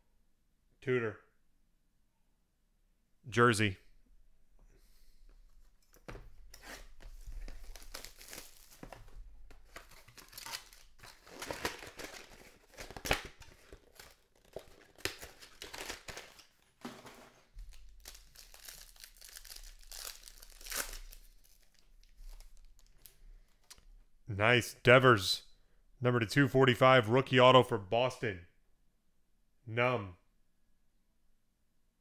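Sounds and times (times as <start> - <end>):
wrapper ripping and crinkling: 6.6 - 16.7, 17.6 - 23.8.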